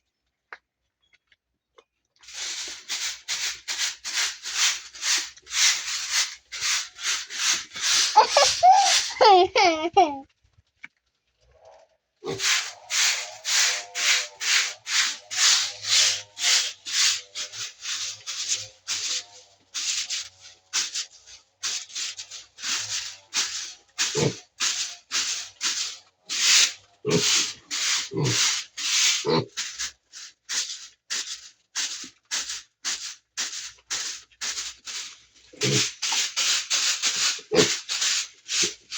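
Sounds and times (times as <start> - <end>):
pigs chewing and munching: 2.2 - 8.1, 12.2 - 38.9.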